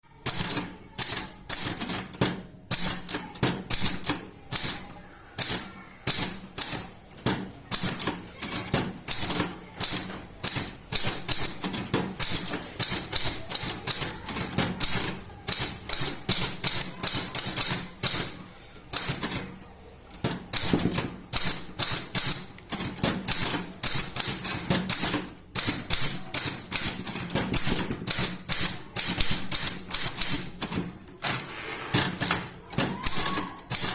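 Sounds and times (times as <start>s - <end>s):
typewriter typing fast: 0.1s - 33.9s.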